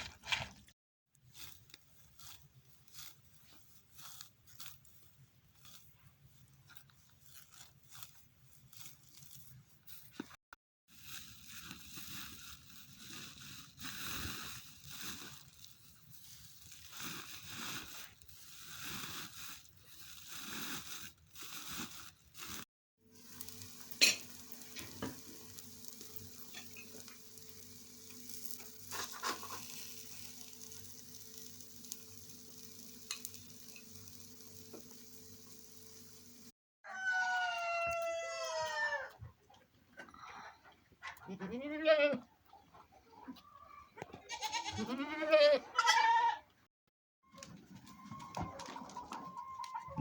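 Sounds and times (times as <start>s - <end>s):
food sizzling in a pan: 22.4s - 36.5s.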